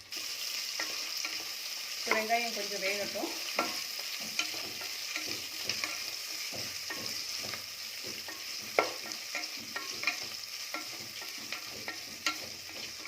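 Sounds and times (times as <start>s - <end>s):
onions sizzling in oil: 0.0s - 13.0s
spoon scraping a pot: 3.3s - 13.0s.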